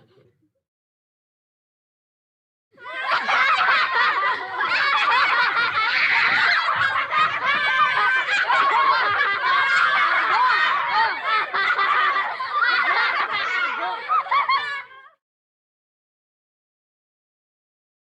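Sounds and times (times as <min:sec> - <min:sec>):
children laughing: 0:02.8 - 0:15.2.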